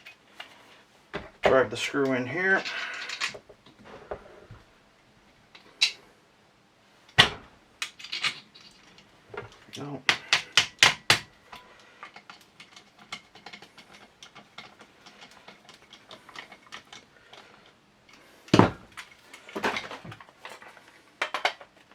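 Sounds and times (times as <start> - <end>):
metal parts clattering: 0.0 - 4.6, 7.1 - 21.9
small metal parts clicking: 1.5 - 3.8, 7.1 - 21.9.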